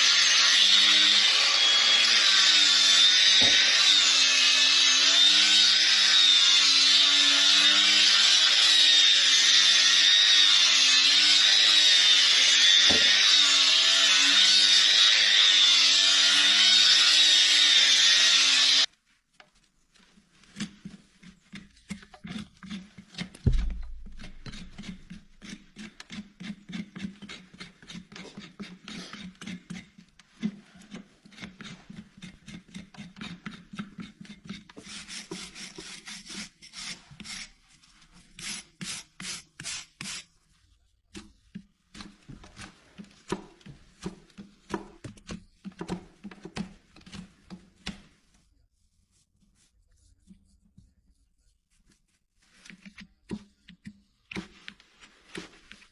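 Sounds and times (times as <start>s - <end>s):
hoof rasp filing: 20.4s - 40.3s
dull thump: 23.4s - 24.2s.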